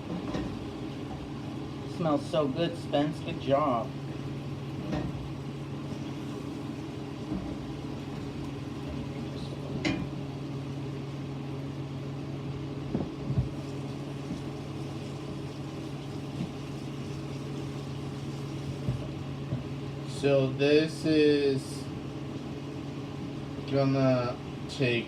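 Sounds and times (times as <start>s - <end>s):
low appliance hum: 0.0s - 25.0s
food sizzling in a pan: 4.5s - 9.2s, 13.4s - 20.0s.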